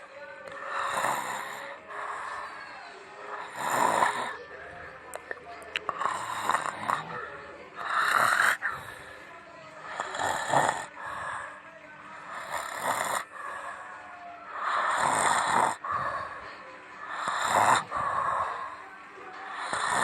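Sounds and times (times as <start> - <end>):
person snoring loudly: 0.6 - 2.6, 3.3 - 4.4, 5.8 - 9.1, 9.9 - 11.5, 12.3 - 13.8, 14.6 - 16.3, 17.0 - 18.8, 19.5 - 20.0.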